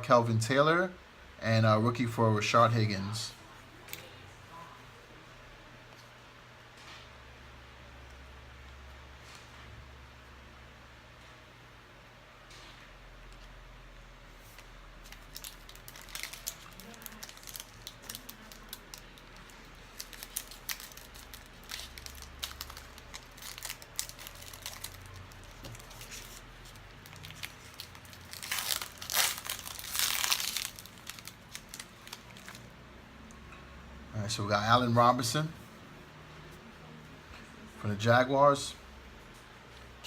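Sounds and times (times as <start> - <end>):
wrapper crinkling and tearing: 14.4 - 32.7.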